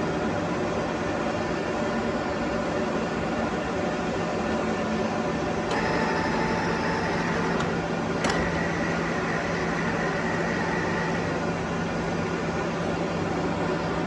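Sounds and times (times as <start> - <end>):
higher mechanical whine: 0.0 - 14.0
lathe running: 5.7 - 11.7.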